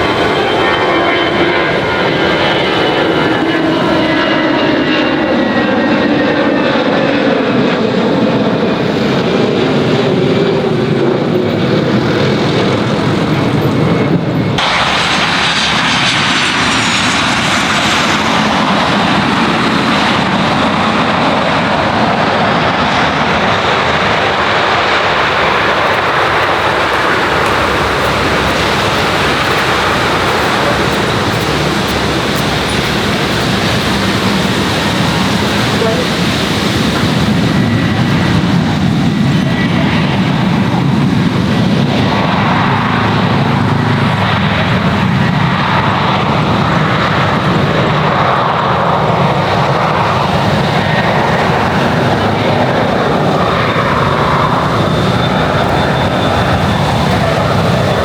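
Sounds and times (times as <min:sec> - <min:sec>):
jet engines rushing: 0:00.0 - 0:58.0
engine whine falling in pitch: 0:22.6 - 0:40.2.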